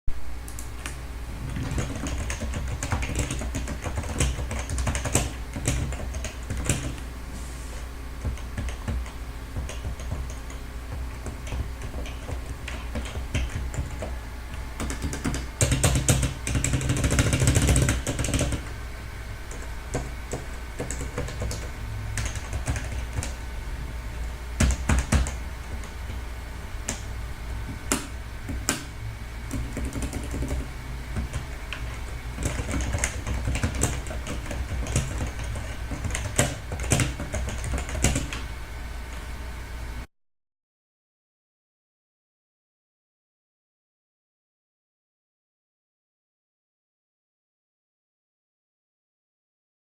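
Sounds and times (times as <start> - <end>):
low background hum: 0.1 - 40.1
keyboard typing: 0.5 - 7.0, 8.2 - 18.7, 19.5 - 23.5, 24.2 - 26.2, 26.8 - 28.9, 29.5 - 38.5.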